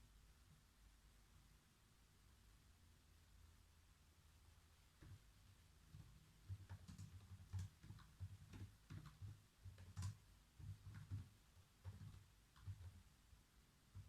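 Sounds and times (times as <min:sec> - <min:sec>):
typing on computer keyboard: 0:05.9 - 0:13.1.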